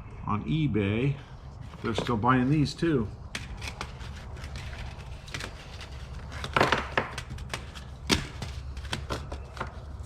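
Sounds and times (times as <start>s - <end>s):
hard objects clicking and knocking: 3.3s - 10.0s.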